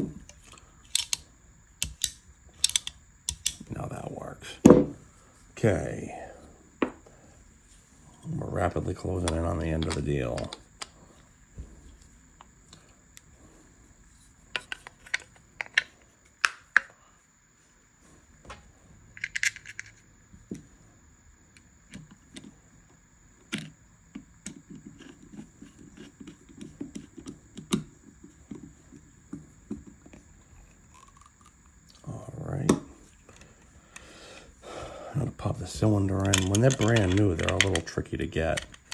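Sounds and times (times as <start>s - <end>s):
metal parts clicking and clinking: 0.2s - 1.2s, 1.8s - 3.7s, 19.2s - 20.0s, 35.7s - 38.9s.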